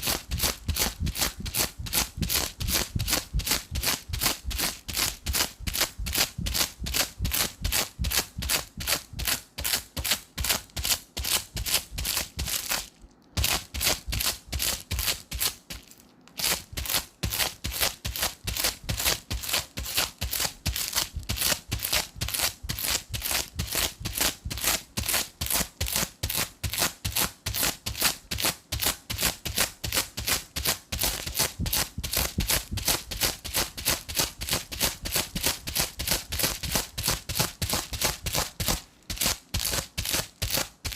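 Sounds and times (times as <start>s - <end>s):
adhesive tape peeling: 0.0s - 40.9s.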